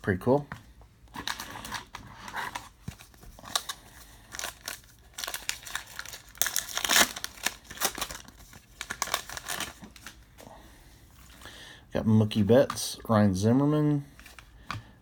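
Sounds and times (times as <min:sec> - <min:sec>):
wrapper tearing and crinkling: 0:01.1 - 0:10.2.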